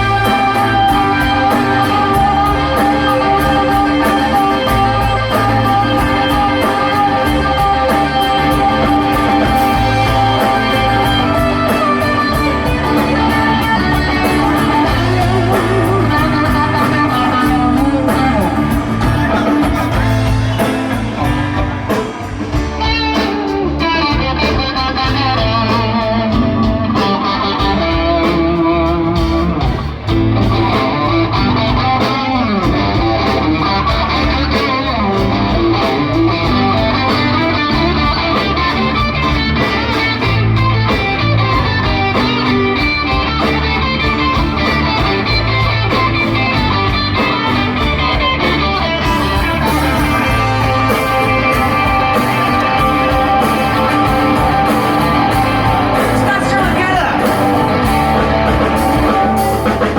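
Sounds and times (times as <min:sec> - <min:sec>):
bass guitar: 0:00.0 - 0:59.9
drums: 0:00.0 - 0:59.9
electric guitar: 0:00.0 - 0:59.9.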